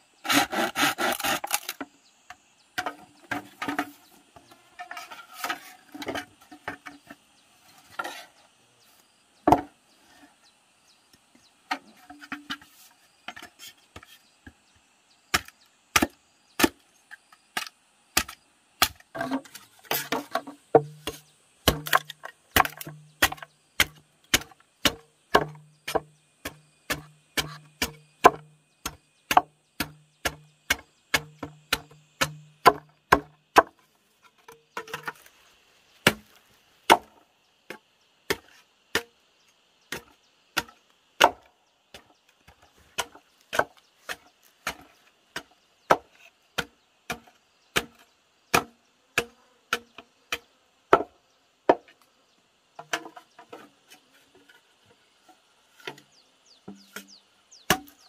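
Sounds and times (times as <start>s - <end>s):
chopping wood: 0.3s - 1.9s, 9.4s - 9.8s, 15.3s - 16.8s, 17.5s - 33.8s, 36.0s - 39.2s, 39.9s - 52.0s, 52.8s - 53.6s, 56.7s - 58.0s.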